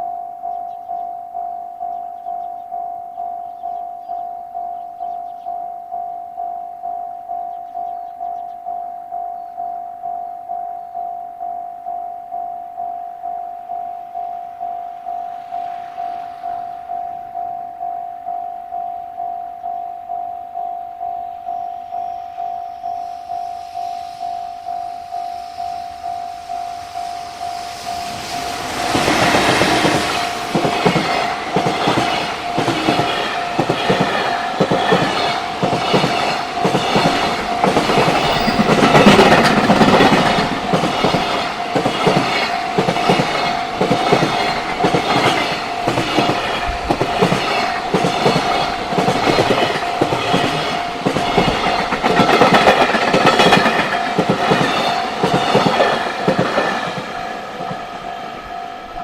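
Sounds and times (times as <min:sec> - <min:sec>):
steady tone: 0:08.8 - 0:54.1
train wheels clattering: 0:25.4 - 0:58.6.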